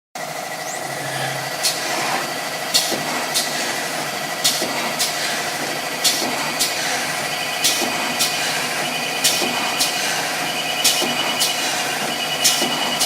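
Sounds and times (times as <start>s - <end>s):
cutting machine droning: 0.3s - 2.7s.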